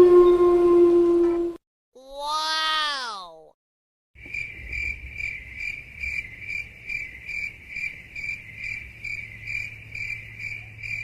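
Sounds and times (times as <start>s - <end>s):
long falling pitched cry: 2.0s - 3.4s
crickets chirping: 4.2s - 11.0s.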